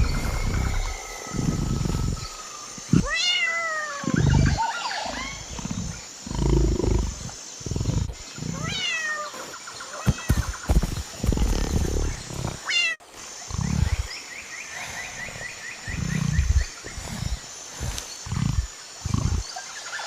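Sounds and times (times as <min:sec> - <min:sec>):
tiger growling: 0:00.0 - 0:12.7, 0:13.4 - 0:19.7.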